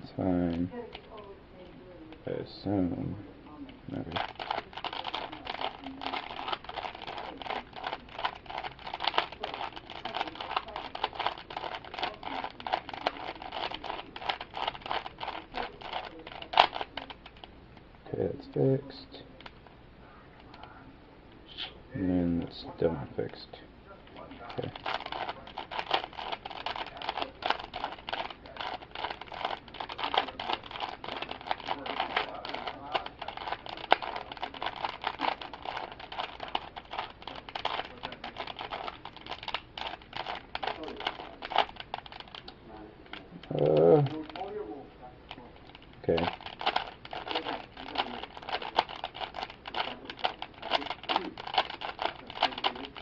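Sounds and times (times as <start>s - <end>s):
puzzle cube plastic layers clicking: 3.9s - 17.5s, 24.1s - 44.5s, 45.3s - 53.0s.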